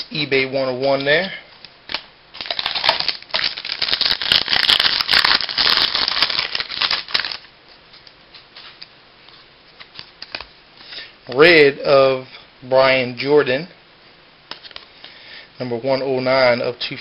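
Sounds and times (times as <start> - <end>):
wrapper crinkling and rustling: 1.9 - 7.5.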